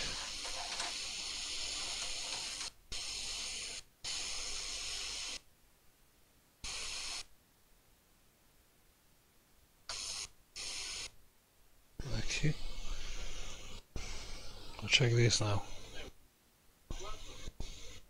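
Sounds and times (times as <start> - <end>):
hot air blower hissing: 0.0 - 5.4, 12.0 - 16.1, 16.9 - 18.0.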